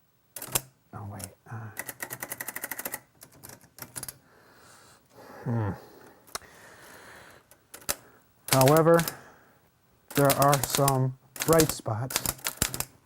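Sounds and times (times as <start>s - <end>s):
typewriter keys clicking: 0.4s - 0.7s, 1.8s - 4.2s, 7.7s - 9.2s, 10.1s - 12.9s.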